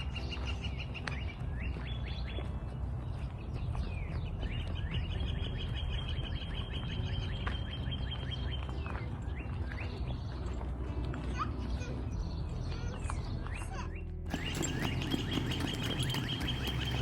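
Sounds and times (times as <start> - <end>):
songbird trilling: 14.3 - 17.0.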